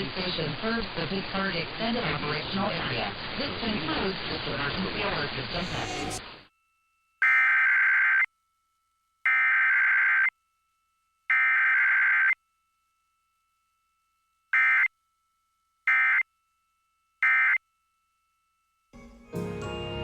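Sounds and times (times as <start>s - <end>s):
harsh two-tone data bursts: 5.6s - 6.3s.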